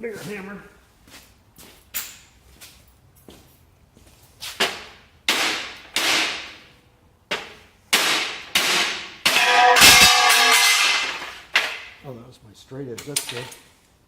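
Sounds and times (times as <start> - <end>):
hammer striking steel: 7.3 - 11.8
ringing metallic tone: 9.3 - 11.1.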